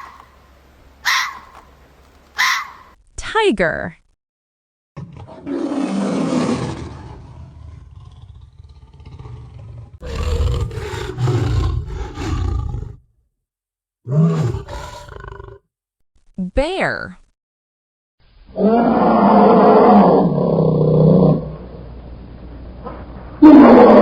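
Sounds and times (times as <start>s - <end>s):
tiger roaring: 5.0s - 13.1s, 14.0s - 15.6s, 18.5s - 21.9s, 23.4s - 24.0s.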